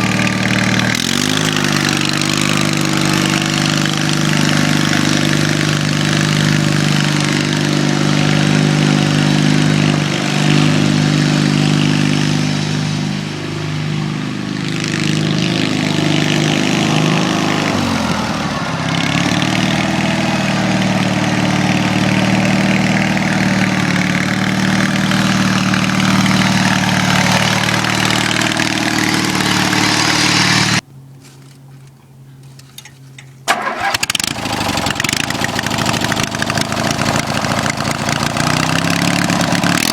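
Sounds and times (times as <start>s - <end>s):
mower engine running: 0.0s - 39.9s.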